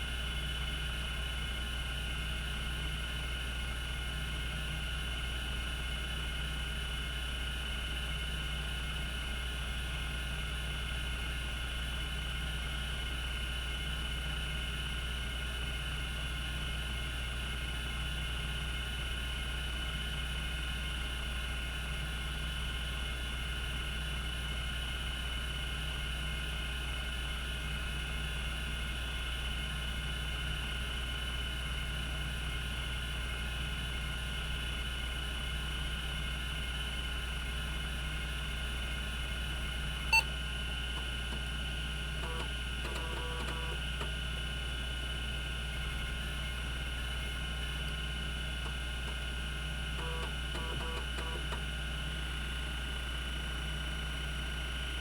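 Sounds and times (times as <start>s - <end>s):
hard drive humming and whining: 0.0s - 55.0s
hard drive sharp click: 42.2s - 44.2s, 50.0s - 51.7s.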